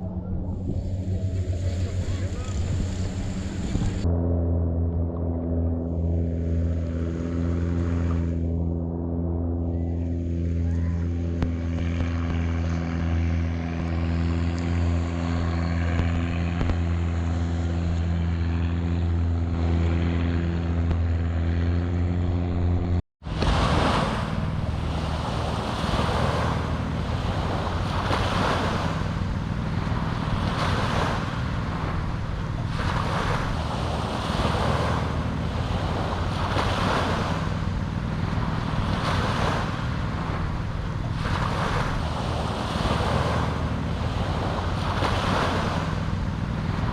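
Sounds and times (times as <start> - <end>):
boat engine running: 0.0 - 46.9
wind on microphone: 0.0 - 46.9
waves washing onto beach: 23.2 - 46.9.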